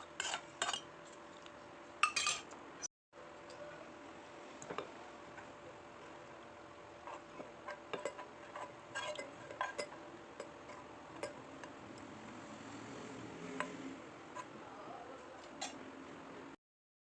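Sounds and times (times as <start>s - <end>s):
utensils clinking against dishes: 2.0s - 2.5s.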